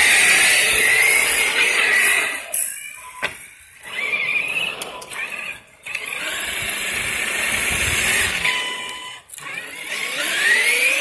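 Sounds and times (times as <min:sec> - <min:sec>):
rc truck electric motor whining: 0:00.0 - 0:02.7, 0:03.8 - 0:11.0.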